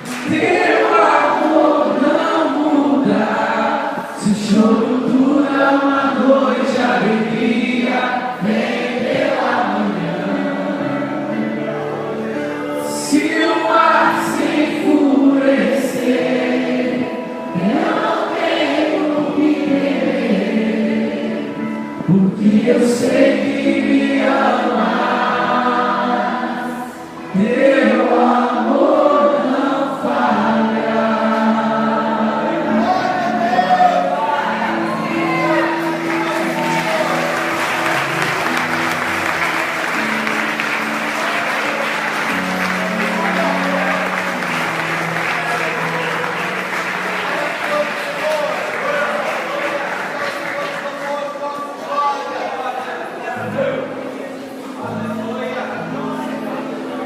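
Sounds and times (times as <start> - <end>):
instrumental accompaniment: 0.0 - 50.4
group singing worship song: 0.0 - 50.6.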